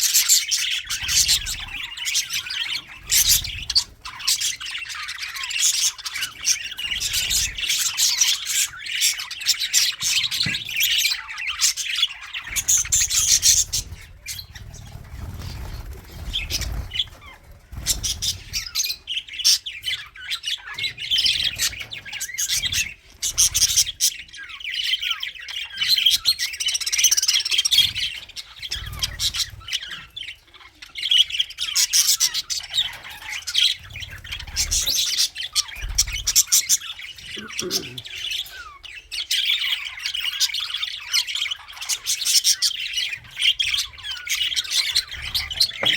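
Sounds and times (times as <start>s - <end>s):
bird squawks: 0.0s - 45.9s
budgies chirping and chattering: 0.0s - 45.9s.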